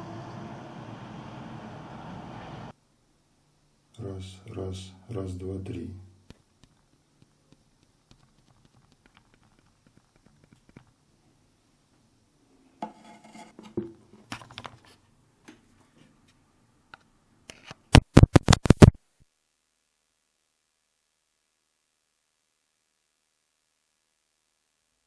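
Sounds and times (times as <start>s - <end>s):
faint scratching: 12.9s - 13.7s
rubbing and scraping: 12.9s - 13.8s
loud sharp taps: 18.0s - 19.0s.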